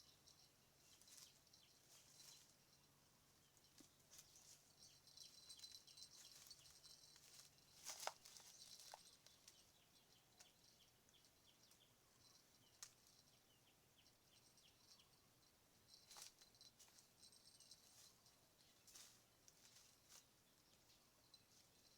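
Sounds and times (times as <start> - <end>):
small chirps: 0.0 - 2.9, 3.5 - 21.9.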